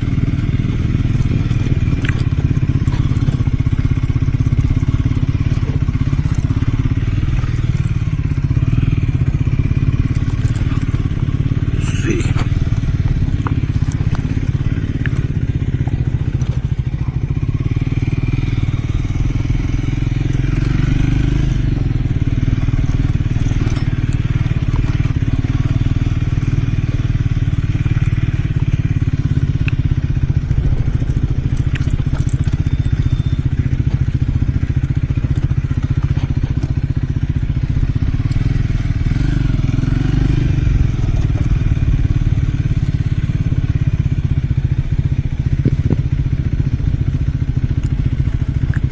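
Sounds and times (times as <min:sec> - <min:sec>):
motorcycle engine running: 0:00.0 - 0:48.9.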